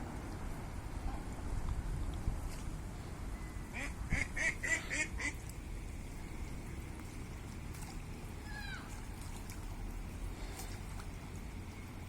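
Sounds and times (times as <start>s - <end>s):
low rush of water: 0.0s - 12.0s
duck quacking: 3.7s - 5.4s.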